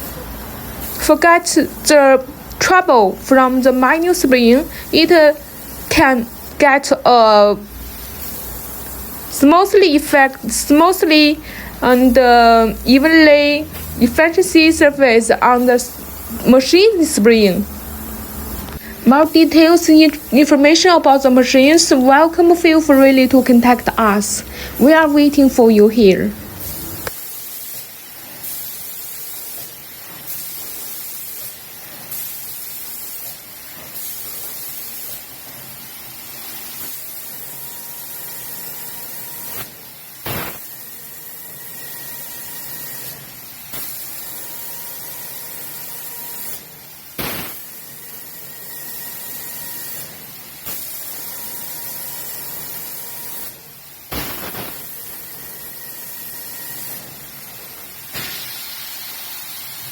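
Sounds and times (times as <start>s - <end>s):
spray gun hissing: 0.0s - 37.6s, 52.3s - 59.9s
sharp blast of air: 10.7s - 12.8s, 15.4s - 19.6s, 24.4s - 25.2s, 58.1s - 59.4s.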